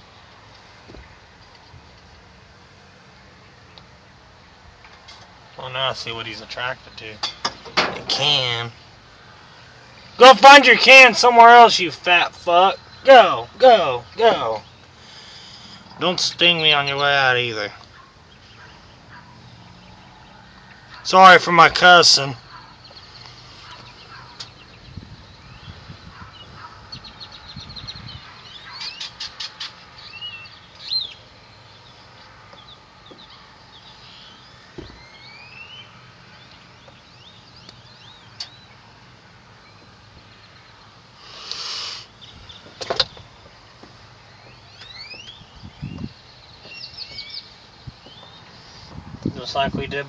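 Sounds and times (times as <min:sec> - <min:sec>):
birds chirping: 0:00.0 - 0:50.0.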